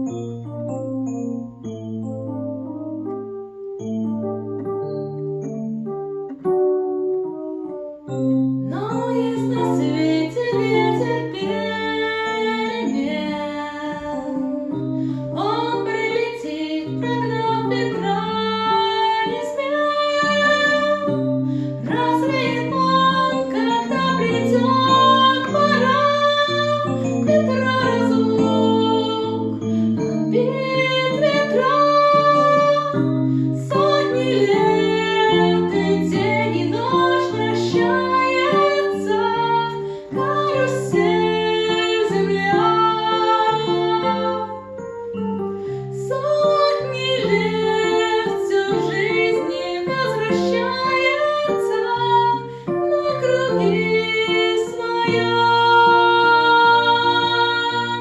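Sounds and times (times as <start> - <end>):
instrumental accompaniment: 0.0 - 58.0
woman singing a song: 8.7 - 44.9, 45.8 - 58.0.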